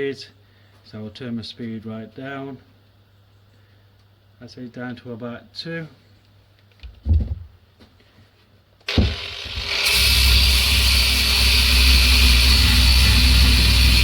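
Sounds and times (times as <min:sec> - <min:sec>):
angle grinder running: 0:08.9 - 0:14.0
sanding disc hissing on metal: 0:09.8 - 0:14.0.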